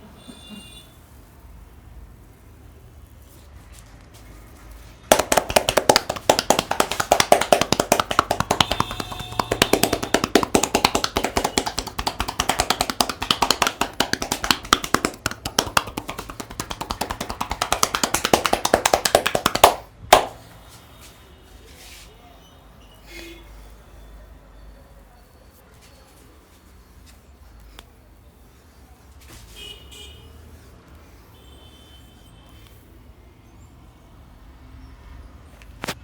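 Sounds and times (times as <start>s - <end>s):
hands slapping in massage: 5.1s - 20.5s.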